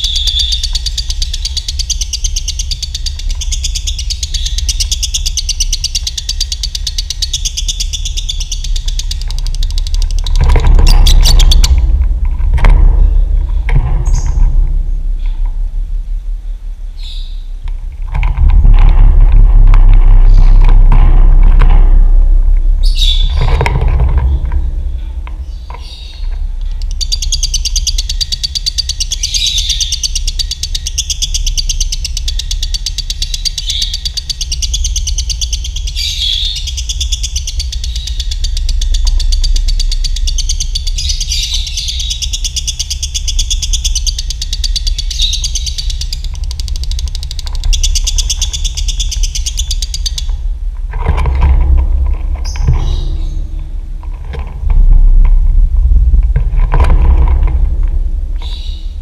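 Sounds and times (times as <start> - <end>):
lovebird trilling: 0.0 - 11.8, 25.4 - 50.4, 58.4 - 59.0
rough bird sounds: 0.0 - 59.0
steady low hum: 0.0 - 59.0.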